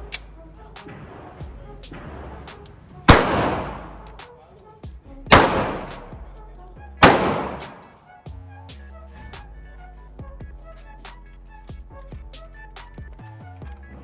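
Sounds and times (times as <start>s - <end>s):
background music with a beat: 0.0s - 14.0s
pistol shots echoing: 3.1s - 4.2s, 5.3s - 6.2s, 7.0s - 7.9s.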